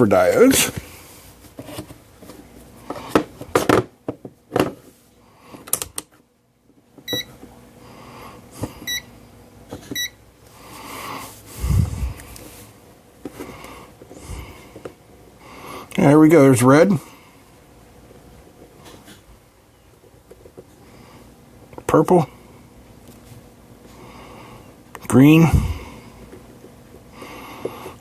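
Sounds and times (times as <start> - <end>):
multimeter beeps: 7.1 - 7.3, 8.8 - 9.1, 10.0 - 10.2.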